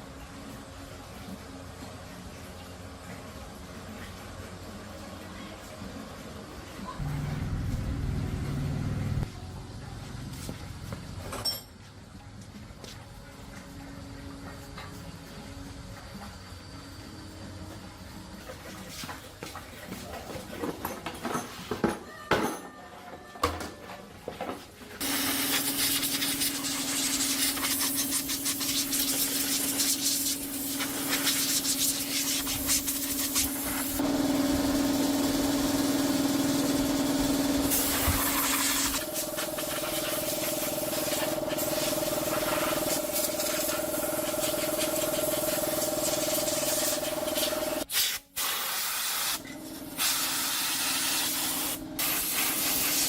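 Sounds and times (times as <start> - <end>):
motor-driven tool running: 30.1 - 47.8.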